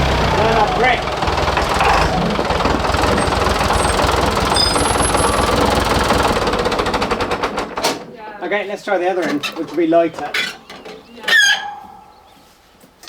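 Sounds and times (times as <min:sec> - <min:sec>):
tractor engine running under load: 0:00.0 - 0:08.1.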